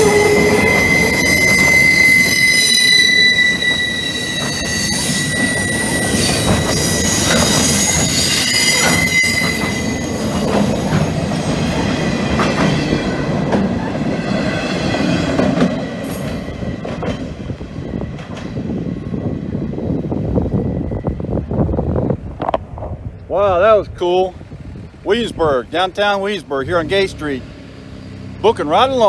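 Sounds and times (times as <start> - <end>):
freight train rumbling and clattering: 0.0 - 2.5, 3.2 - 29.0
train wheels squealing: 0.0 - 22.1.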